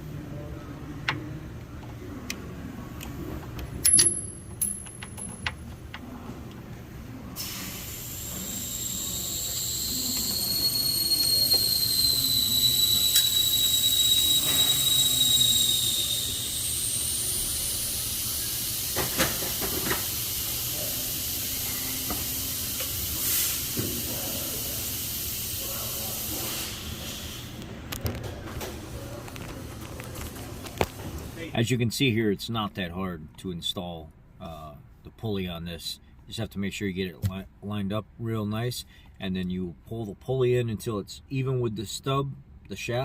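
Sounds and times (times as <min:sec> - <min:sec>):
steady hiss: 0:07.4 - 0:27.6
high whistling tone: 0:08.2 - 0:18.7.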